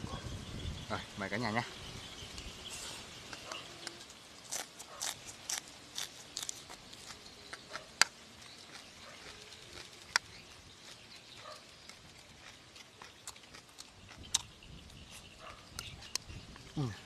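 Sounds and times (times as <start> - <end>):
crunching and chewing: 3.4 - 17.0.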